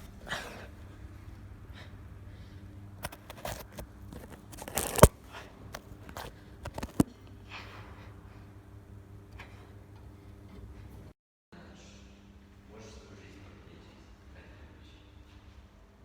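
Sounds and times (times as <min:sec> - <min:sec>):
camera handling noise: 0:03.0 - 0:05.1, 0:05.8 - 0:07.0
knocks and scrapes climbing: 0:03.0 - 0:05.1, 0:05.8 - 0:07.0.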